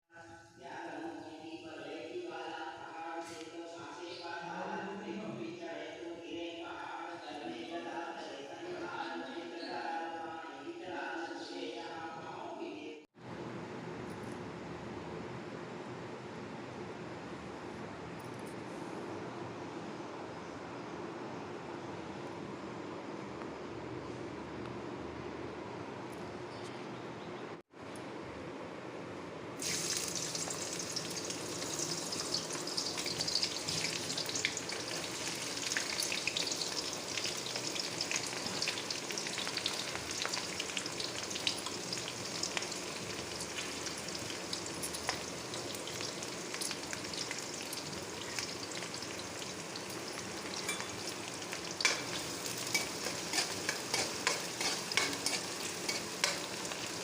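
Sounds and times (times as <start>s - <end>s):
food sizzling in oil: 29.6s - 57.0s
spoon scraping a pan: 51.8s - 56.9s.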